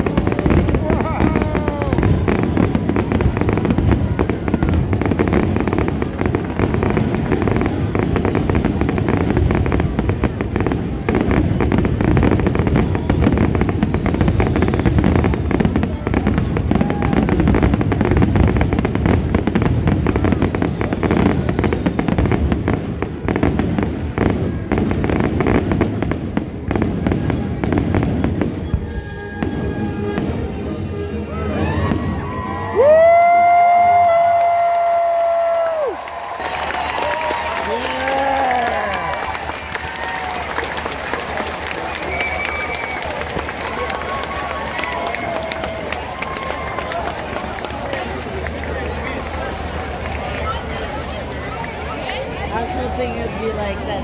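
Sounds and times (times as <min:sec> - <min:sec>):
fireworks bangs and crackles: 0:00.0 - 0:54.0
music: 0:28.8 - 0:32.1.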